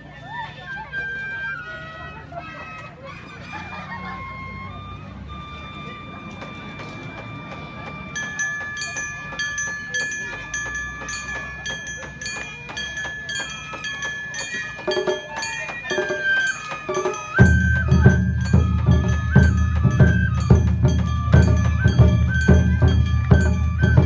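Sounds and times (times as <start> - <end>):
high held melody: 4.4 - 24.0
rhythmic ticking strikes: 5.3 - 24.0
heavy drums: 7.1 - 24.0.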